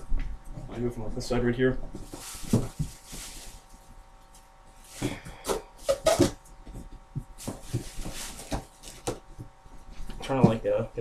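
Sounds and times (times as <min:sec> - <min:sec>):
cardboard rustling and scraping: 0:01.9 - 0:03.8, 0:04.8 - 0:09.4.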